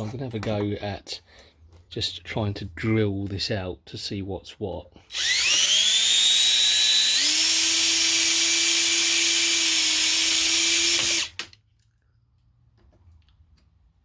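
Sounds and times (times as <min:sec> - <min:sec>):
electric drill whining: 0:05.1 - 0:11.5.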